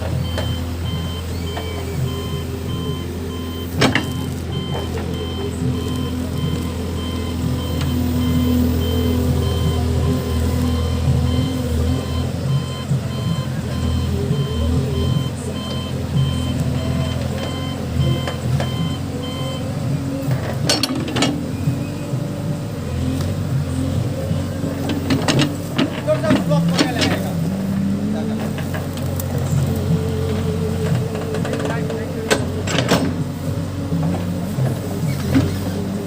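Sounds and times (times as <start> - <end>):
diesel engine running: 0.0 - 36.0
reverse alarm beeping: 0.1 - 22.4.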